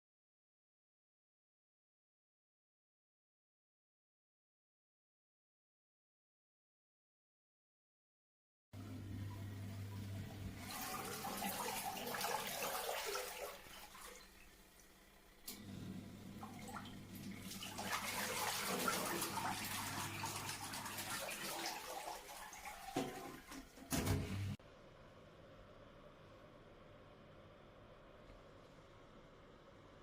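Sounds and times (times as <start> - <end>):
washing machine motor hum: 8.8 - 30.0
water sloshing and splashing: 9.9 - 14.5, 16.3 - 24.5.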